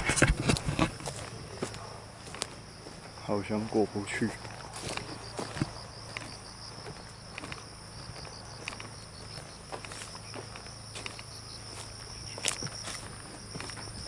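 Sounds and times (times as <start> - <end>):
faint clicks and rustles: 0.0 - 3.1
insects trilling: 0.0 - 14.0.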